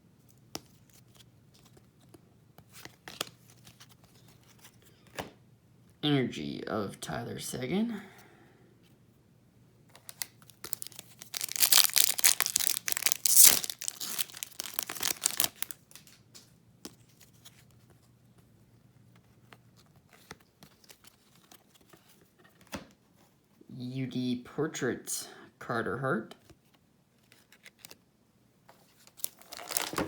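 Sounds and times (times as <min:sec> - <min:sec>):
wrapper tearing and crinkling: 0:10.0 - 0:16.2, 0:29.0 - 0:30.0.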